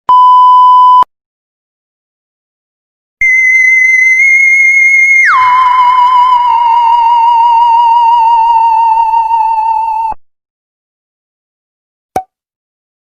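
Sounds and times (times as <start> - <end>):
comedic whistle sound effect: 3.2 - 8.9.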